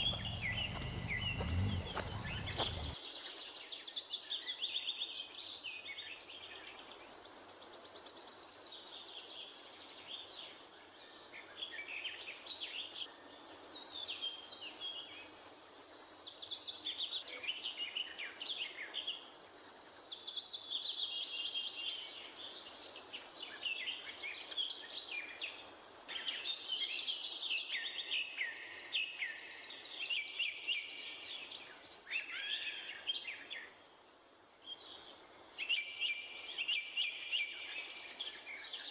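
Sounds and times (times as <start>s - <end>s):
birds chirping and trilling: 0.0s - 3.0s.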